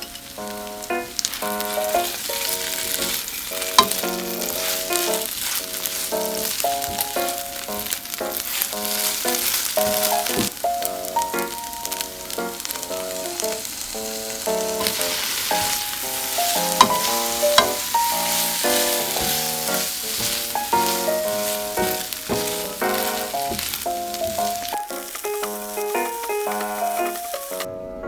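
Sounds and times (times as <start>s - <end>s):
noodle rolls sizzling in oil: 0.0s - 27.7s
background music of bright notes: 0.0s - 28.0s.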